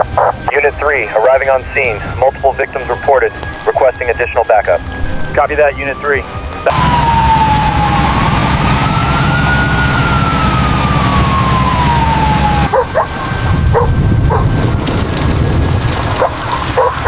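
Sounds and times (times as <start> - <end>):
emergency siren rising and falling: 0.0 - 16.8
low rumble: 0.0 - 16.8
heavy rain: 0.0 - 17.0
dog barking: 0.2 - 0.4, 12.7 - 14.5, 16.2 - 17.0.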